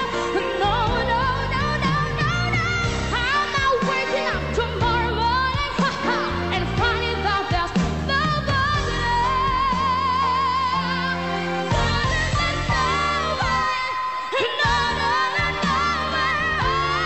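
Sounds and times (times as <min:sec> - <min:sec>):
band backing: 0:00.0 - 0:17.0
pop song with vibrato singing: 0:00.0 - 0:17.0.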